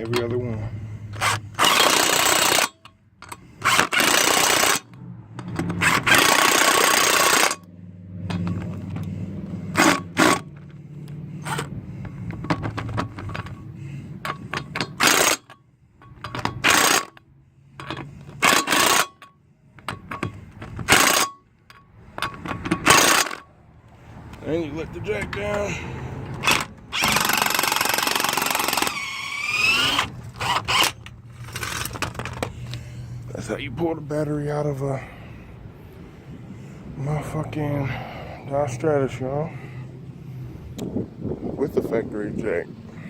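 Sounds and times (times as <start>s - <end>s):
wrench ratcheting and scraping: 0.0s - 33.6s.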